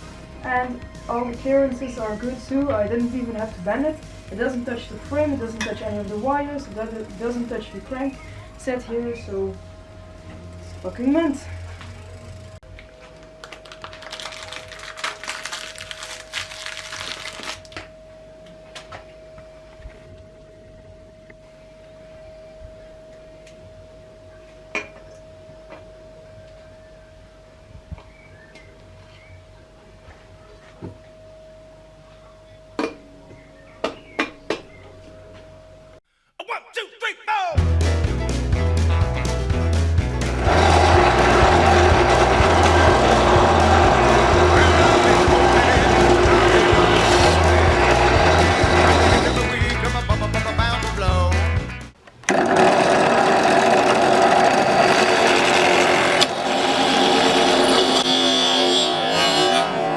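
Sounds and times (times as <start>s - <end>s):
faint high hum: 3.4s - 33.8s
small power tool motor: 40.4s - 49.5s, 52.3s - 59.9s.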